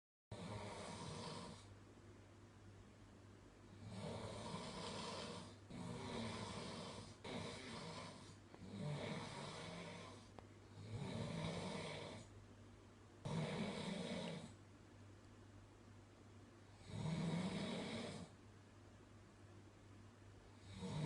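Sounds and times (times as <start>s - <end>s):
person snoring: 0.3s - 1.7s, 3.7s - 12.3s, 13.2s - 14.6s, 16.7s - 18.4s, 20.6s - 21.0s
steady low hum: 0.3s - 21.0s.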